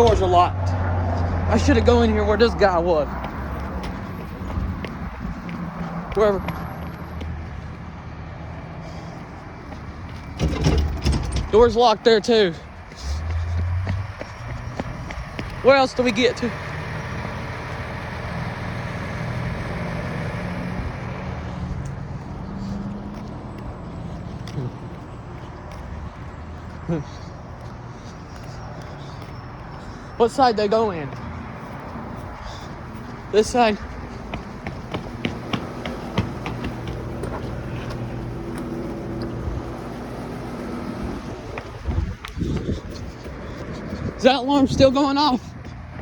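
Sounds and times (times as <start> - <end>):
fire engine idling: 6.2 - 23.7, 32.3 - 43.2.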